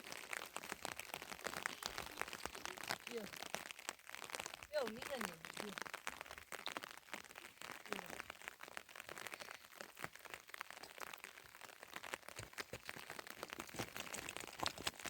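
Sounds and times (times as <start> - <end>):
rain pattering: 0.0 - 15.0.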